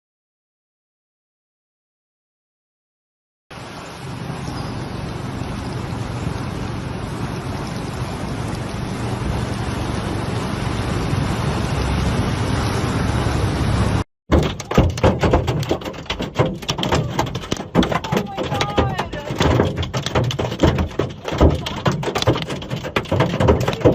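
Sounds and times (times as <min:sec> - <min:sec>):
fast-flowing floodwater rushing: 0:03.5 - 0:23.9
irregular knocks and thuds: 0:14.3 - 0:23.9.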